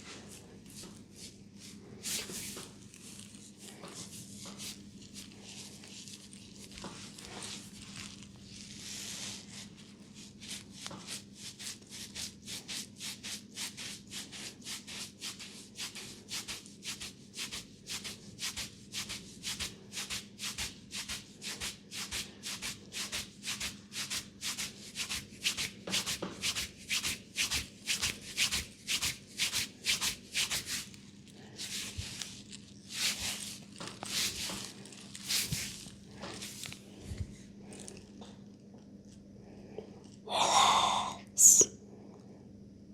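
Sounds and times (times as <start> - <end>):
hands rubbing hair and scalp: 0.0 - 37.3.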